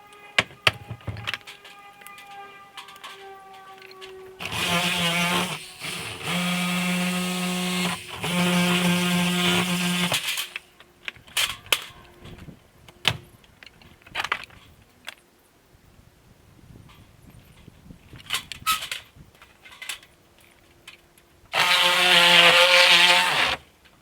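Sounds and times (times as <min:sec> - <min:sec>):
electric power tool running: 0:03.8 - 0:10.6, 0:21.5 - 0:23.6.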